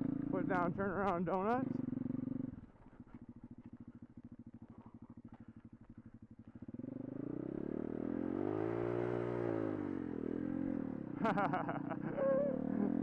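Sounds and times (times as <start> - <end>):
small motorbike engine revving: 6.7 - 11.5.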